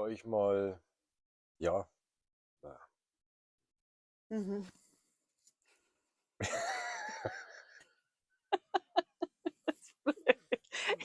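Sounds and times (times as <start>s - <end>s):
person laughing: 6.4s - 7.9s, 8.5s - 11.0s.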